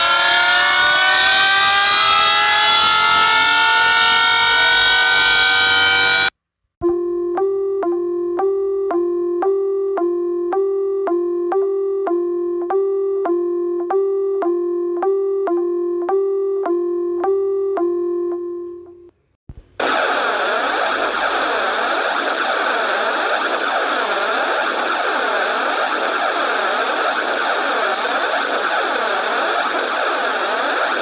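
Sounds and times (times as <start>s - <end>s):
repeating organ-like alarm tone: 0.0s - 6.3s, 19.8s - 31.0s.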